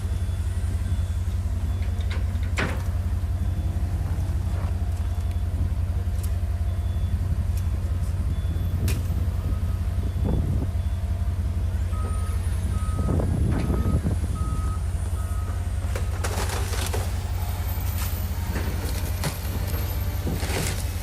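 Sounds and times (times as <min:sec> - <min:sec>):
low rumble of street traffic: 0:00.0 - 0:21.0
vehicle reversing beeper: 0:00.0 - 0:21.0
scuffs and crackles: 0:03.8 - 0:06.4, 0:15.8 - 0:21.0.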